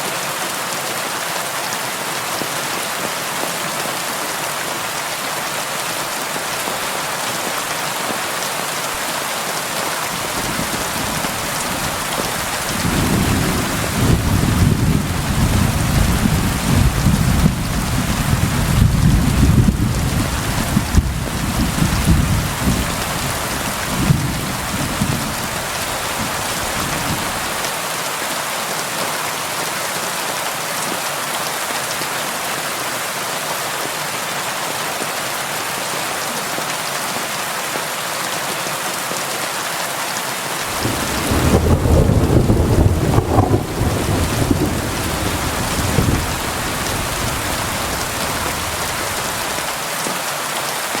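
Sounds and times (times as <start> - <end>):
heavy rain pouring: 0.0 - 51.0
thunder rumbling: 10.3 - 27.6, 40.7 - 49.7.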